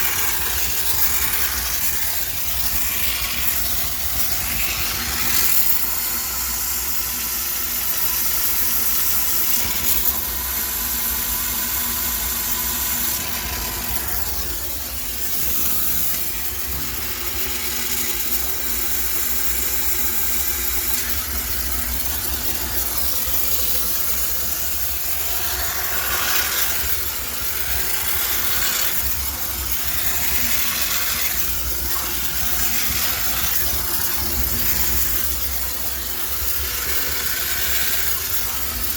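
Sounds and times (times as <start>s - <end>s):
steam cleaner hissing: 0.0s - 38.9s
steam cleaner unit running: 0.0s - 38.9s.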